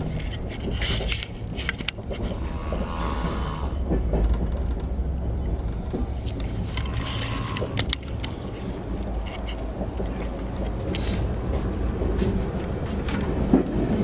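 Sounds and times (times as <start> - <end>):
moving train rumble: 0.0 - 14.0
man snoring: 2.3 - 3.8, 6.8 - 8.0.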